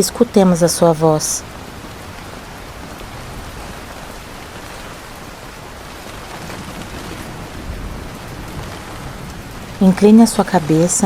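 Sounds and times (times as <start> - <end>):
steady rain falling: 0.0 - 11.0.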